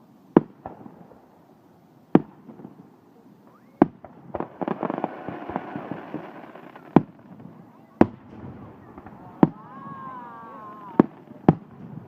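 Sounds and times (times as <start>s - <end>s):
fireworks crackling pops: 0.3s - 1.4s, 2.1s - 12.0s
fireworks bangs: 3.5s - 12.0s.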